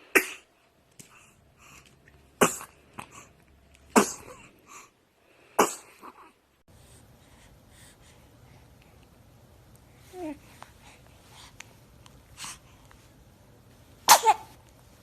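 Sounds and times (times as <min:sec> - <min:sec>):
baby sneezing: 0:00.1 - 0:00.5, 0:03.9 - 0:04.5, 0:05.6 - 0:06.2, 0:14.0 - 0:14.6.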